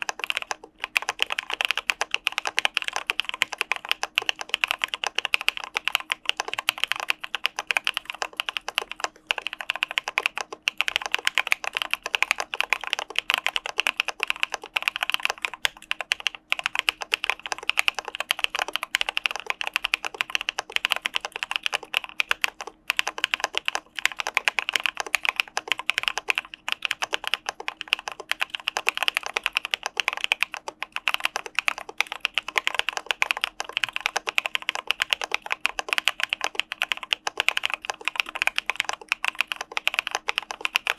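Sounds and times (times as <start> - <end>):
fast typing on mechanical keyboard: 0.0 - 40.9.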